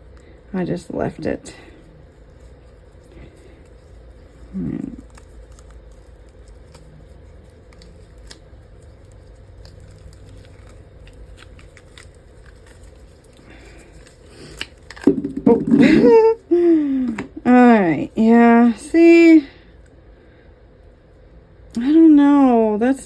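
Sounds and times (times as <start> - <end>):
steady low hum: 0.0 - 23.0
person's voice: 0.5 - 1.7, 17.4 - 19.6, 21.8 - 23.0.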